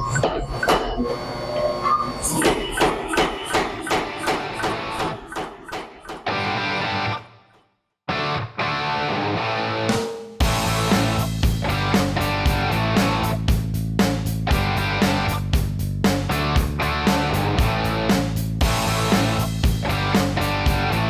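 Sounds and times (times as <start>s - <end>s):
sharp beat strikes: 2.4s - 7.0s
guitar music: 5.9s - 7.4s, 8.1s - 13.4s.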